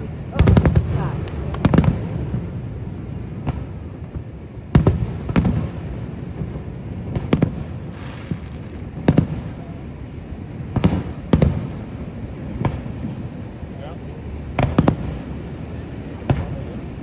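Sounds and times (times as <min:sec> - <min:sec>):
fireworks booming: 0:00.0 - 0:17.0
steady low rumble: 0:00.0 - 0:17.0.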